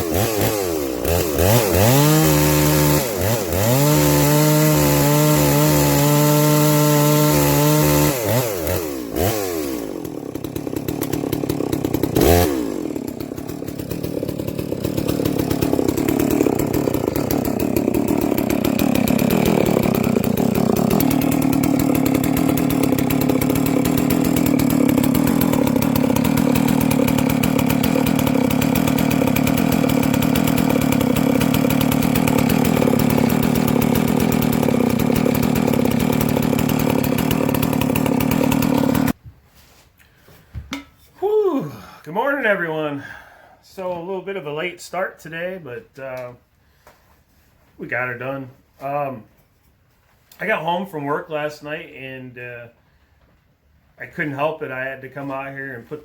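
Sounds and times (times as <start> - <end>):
chainsaw revving and cutting wood: 0.0 - 39.2.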